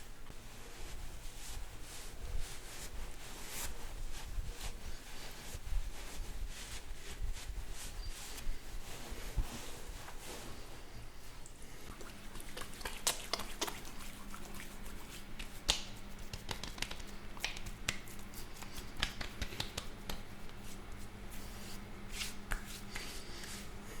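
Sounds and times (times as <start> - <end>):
faint steady hum: 0.0 - 24.0
hands clicking and patting: 11.9 - 21.1, 22.2 - 23.6.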